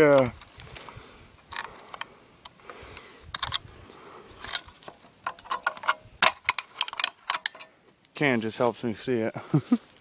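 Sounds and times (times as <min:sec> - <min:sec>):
clicks and rattles of handling: 0:00.0 - 0:03.6, 0:04.4 - 0:07.7.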